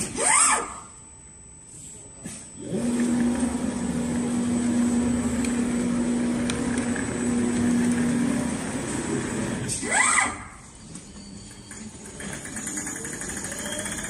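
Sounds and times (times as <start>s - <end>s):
sewing machine motor humming: 11.7s - 14.0s.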